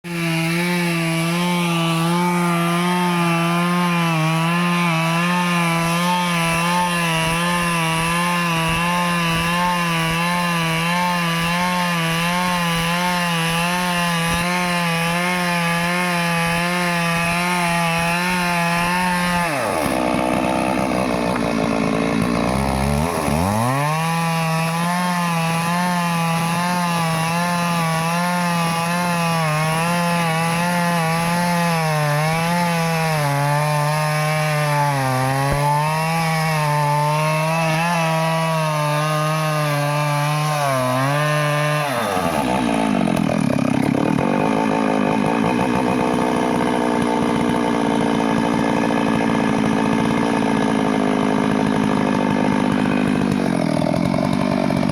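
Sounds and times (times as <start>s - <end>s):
chainsaw cutting wood: 0.0s - 54.9s.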